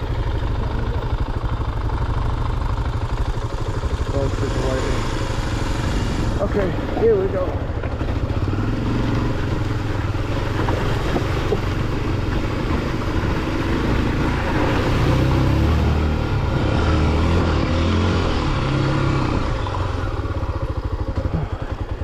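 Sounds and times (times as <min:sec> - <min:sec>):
motorcycle engine revving: 0:00.0 - 0:22.0
wind and tyre rushing: 0:04.9 - 0:22.0.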